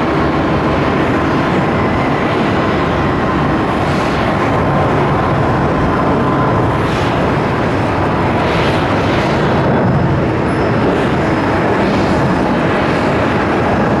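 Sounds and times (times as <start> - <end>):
jet engines rumbling: 0.0 - 14.0.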